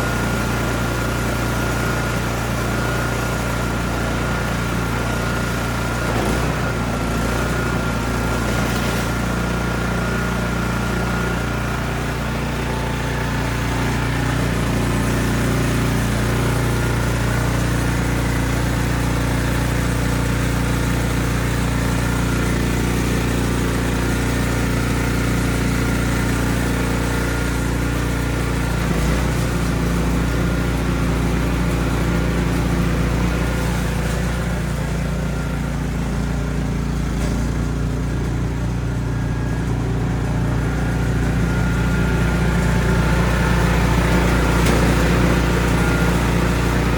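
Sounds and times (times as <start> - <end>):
snowblower running: 0.0 - 46.9.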